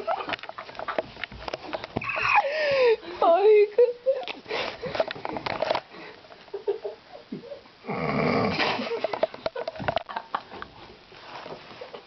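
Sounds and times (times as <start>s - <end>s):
person snoring: 7.8s - 8.8s.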